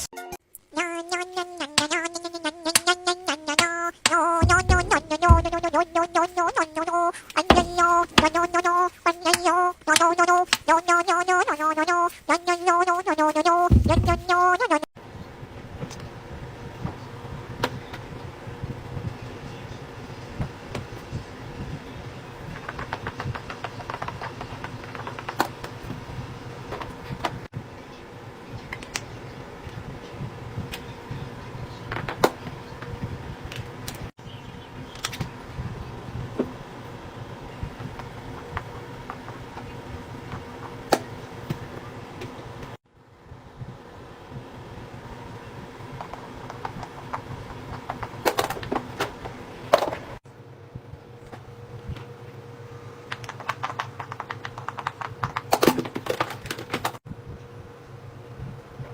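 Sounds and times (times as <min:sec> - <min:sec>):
fidget toys clicking: 0:00.8 - 0:13.6.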